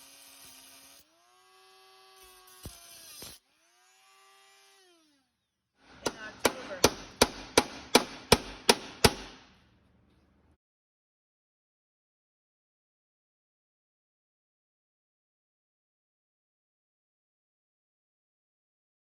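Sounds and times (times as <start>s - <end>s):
rotary tool whining: 0.0s - 6.5s
sharp knocks: 5.9s - 9.5s.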